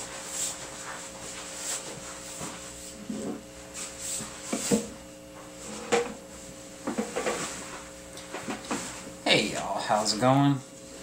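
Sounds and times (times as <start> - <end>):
steady hum: 0.0 - 11.0
light knocks and rubbing: 6.9 - 7.7.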